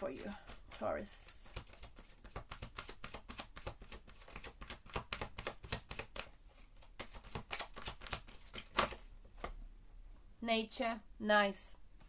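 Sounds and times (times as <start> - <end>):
cards being shuffled: 0.0 - 9.6.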